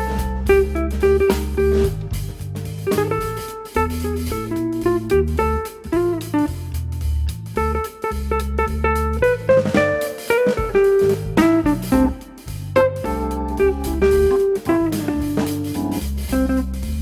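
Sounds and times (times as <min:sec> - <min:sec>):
plucked guitar melody: 0:00.0 - 0:06.8, 0:07.6 - 0:16.8
bass line: 0:00.0 - 0:17.0.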